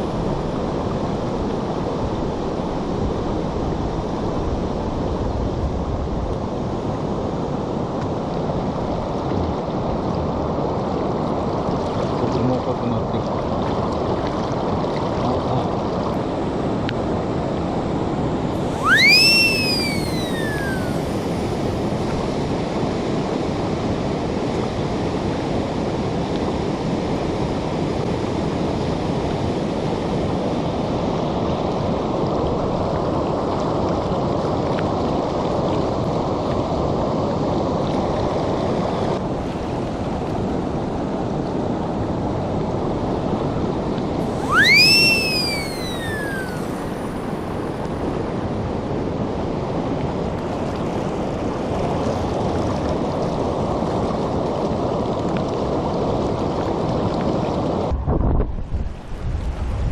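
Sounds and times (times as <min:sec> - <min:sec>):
loud sliding whistle: 0:18.6 - 0:22.0, 0:44.2 - 0:47.8.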